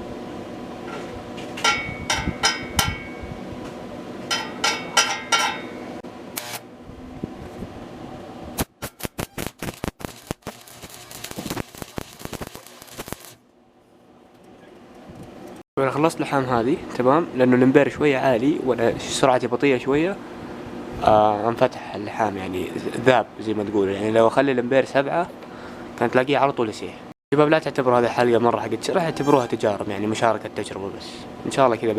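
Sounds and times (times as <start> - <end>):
welding arc crackling: 8.6 - 13.4
welding electrode tapping steel: 8.6 - 13.4.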